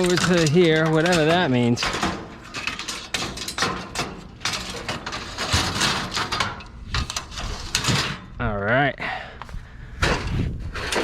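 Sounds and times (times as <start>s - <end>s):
bulky items knocking and clattering: 0.0s - 8.4s.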